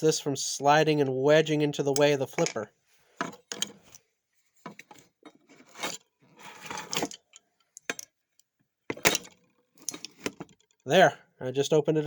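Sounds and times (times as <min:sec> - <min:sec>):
magnet scraping on metal: 0:04.7 - 0:07.2.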